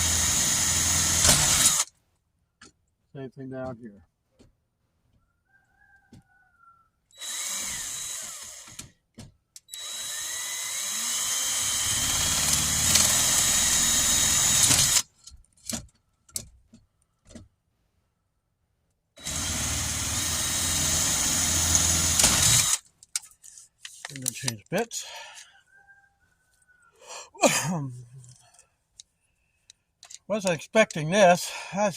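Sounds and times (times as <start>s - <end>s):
power drill boring: 0.0s - 1.9s, 7.1s - 8.9s, 9.7s - 15.1s, 19.2s - 22.9s
small clicks and knocks: 15.1s - 17.6s, 22.8s - 24.7s, 28.2s - 31.0s.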